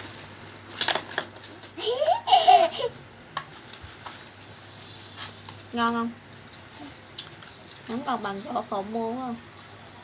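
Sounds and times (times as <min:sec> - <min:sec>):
laugh-like vocal sound: 0:01.8 - 0:03.0.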